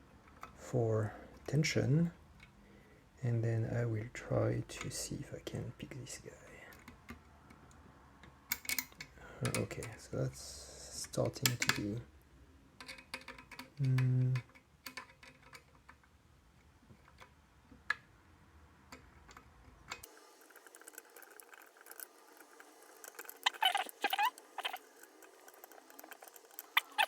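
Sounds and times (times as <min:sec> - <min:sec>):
metallic clicks of lock picking: 0:08.5 - 0:09.7
short squeaky chirps: 0:23.4 - 0:24.8, 0:26.8 - 0:27.0.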